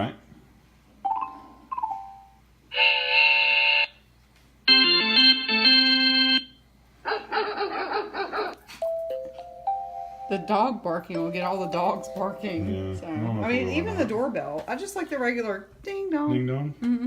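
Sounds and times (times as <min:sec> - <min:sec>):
two-note doorbell chime: 0:08.8 - 0:13.0
short stepping melody: 0:08.8 - 0:13.7
steady ringing tone: 0:08.8 - 0:14.0
busy pitched alert sound: 0:08.8 - 0:14.3.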